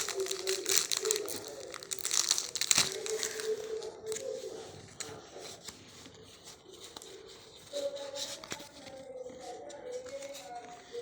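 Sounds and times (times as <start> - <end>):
plastic wrapping crinkling and tearing: 0.0 - 5.8.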